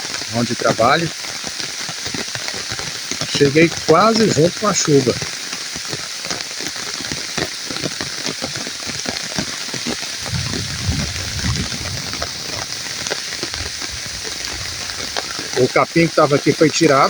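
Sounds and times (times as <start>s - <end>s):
rain falling: 0.0s - 17.0s
raindrops tapping close by: 0.0s - 17.0s
low rumble: 10.2s - 15.6s.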